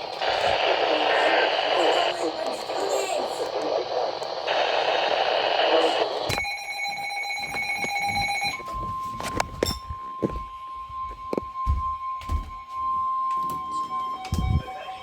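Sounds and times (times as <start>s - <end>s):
radio static: 0.0s - 6.4s
shrill multi-pitch tone: 5.8s - 15.0s.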